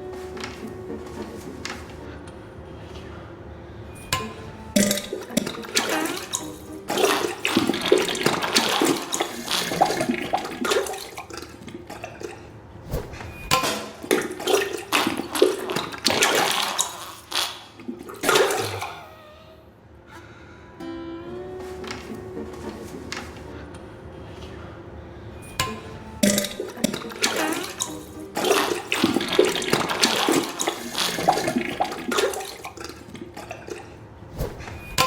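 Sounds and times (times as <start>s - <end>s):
wet sputtering farts: 5.8s - 11.0s, 14.3s - 19.6s, 26.3s - 32.6s.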